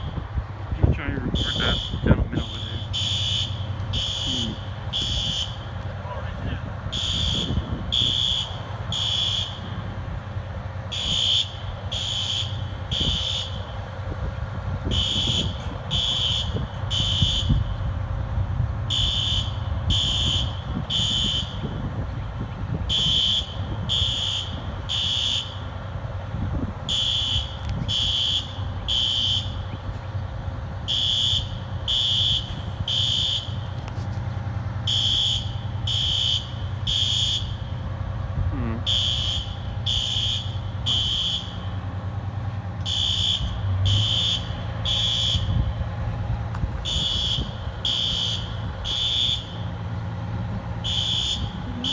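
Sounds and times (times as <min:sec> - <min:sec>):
wind rumble on microphone: 0:00.0 - 0:02.5, 0:06.2 - 0:09.0, 0:14.0 - 0:25.0, 0:26.0 - 0:28.2, 0:37.6 - 0:38.9, 0:45.3 - 0:47.9
fire alarm horn blasts: 0:00.0 - 0:10.1, 0:10.8 - 0:18.0, 0:18.9 - 0:25.8, 0:26.8 - 0:30.0, 0:30.8 - 0:34.0, 0:34.8 - 0:37.8, 0:38.6 - 0:41.8, 0:42.8 - 0:45.8, 0:46.8 - 0:49.9, 0:50.8 - 0:51.9.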